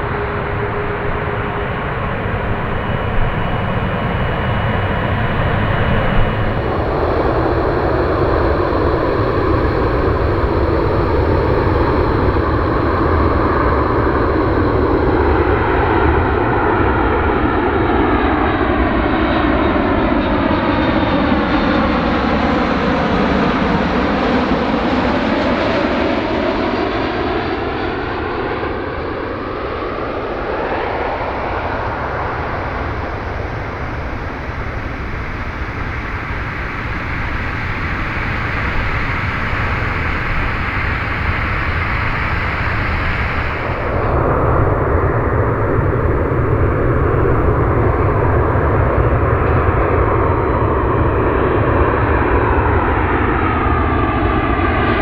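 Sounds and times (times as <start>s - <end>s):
jet airliner engines running: 0.0s - 55.0s
gliding whine tones: 30.6s - 53.2s.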